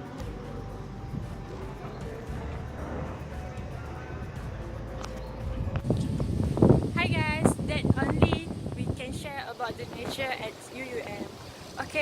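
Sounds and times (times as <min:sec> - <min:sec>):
quiet background music: 0:00.0 - 0:12.0.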